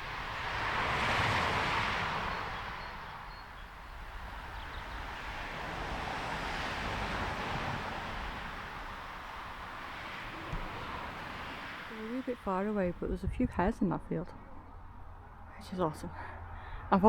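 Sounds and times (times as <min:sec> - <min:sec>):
vehicle tyre hiss passing: 0:00.0 - 0:13.0.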